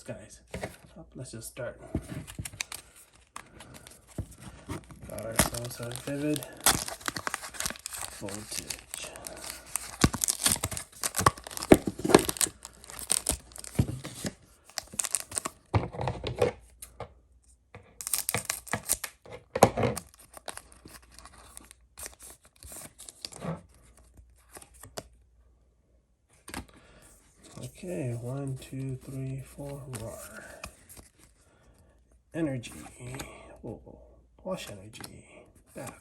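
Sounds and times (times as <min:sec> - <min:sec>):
foil wrapper crinkling: 0:04.9 - 0:15.5, 0:18.0 - 0:19.1.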